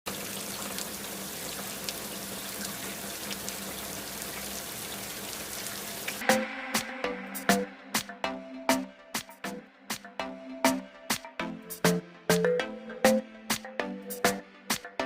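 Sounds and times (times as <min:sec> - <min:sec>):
heavy rain hissing: 0:00.1 - 0:07.5.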